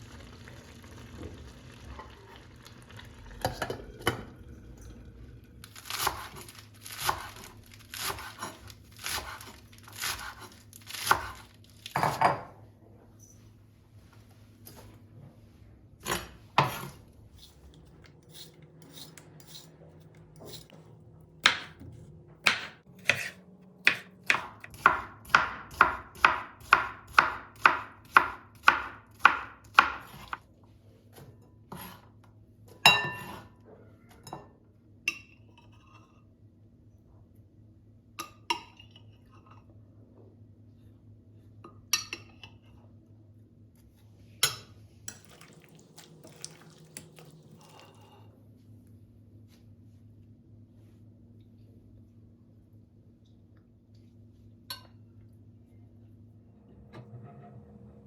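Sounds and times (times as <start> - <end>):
low steady hum: 30.4 - 58.0
utensils and dishes clinking: 44.4 - 48.1.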